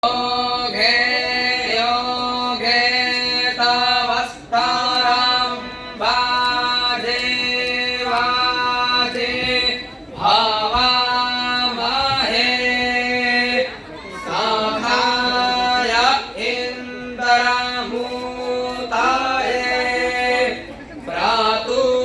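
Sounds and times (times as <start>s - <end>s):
group chanting in unison: 8.0s - 22.0s.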